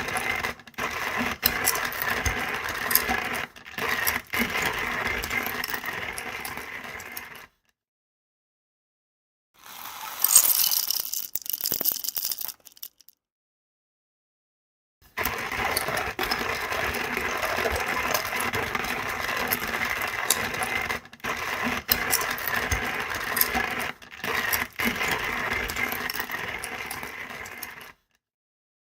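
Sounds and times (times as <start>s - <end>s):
coffee grinder grinding beans: 0.0s - 7.6s, 9.6s - 13.1s, 15.1s - 28.2s.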